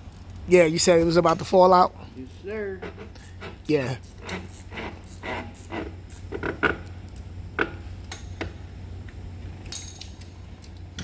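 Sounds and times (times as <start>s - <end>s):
steady low hum: 0.0s - 11.0s
metal parts clinking: 9.6s - 10.4s.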